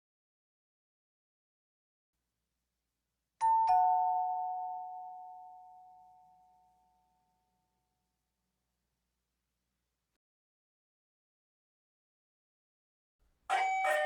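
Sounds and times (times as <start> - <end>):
ding-dong doorbell chime: 3.4 - 6.7, 13.5 - 14.0.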